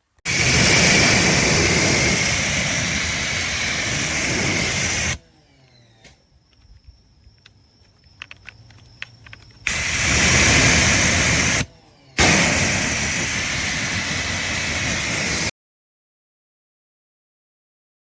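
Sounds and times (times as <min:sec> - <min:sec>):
pressure washer spraying: 0:00.0 - 0:05.2, 0:09.7 - 0:15.5
light clicks: 0:06.5 - 0:09.7.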